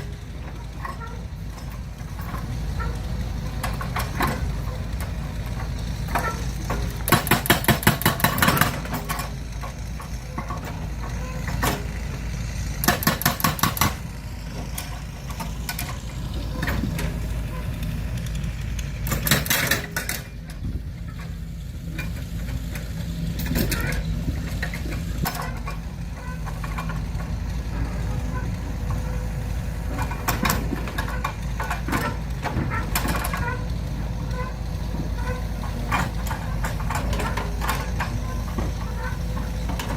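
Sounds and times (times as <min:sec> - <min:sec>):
low motor drone: 0:13.7 - 0:39.9.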